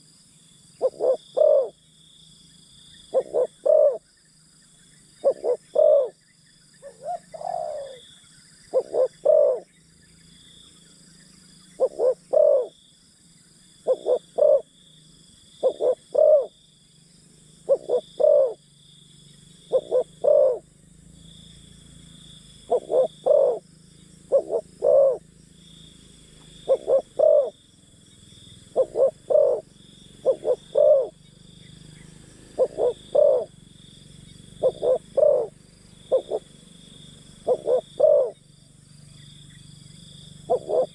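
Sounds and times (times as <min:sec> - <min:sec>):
dove cooing: 0:00.8 - 0:01.8, 0:03.1 - 0:04.1, 0:05.2 - 0:06.2, 0:06.8 - 0:08.0, 0:08.7 - 0:09.7, 0:11.7 - 0:12.8, 0:13.8 - 0:14.7, 0:15.6 - 0:16.6, 0:17.7 - 0:18.6, 0:19.7 - 0:20.7, 0:22.6 - 0:23.6, 0:24.3 - 0:25.2, 0:26.6 - 0:27.6, 0:28.7 - 0:31.2, 0:32.4 - 0:33.6, 0:34.6 - 0:36.5, 0:37.4 - 0:38.4, 0:40.5 - 0:40.9.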